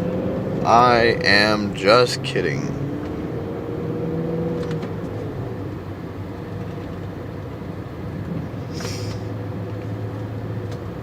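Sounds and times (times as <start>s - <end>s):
car engine and exhaust running: 0.0s - 11.0s
road and wind noise: 0.0s - 11.0s.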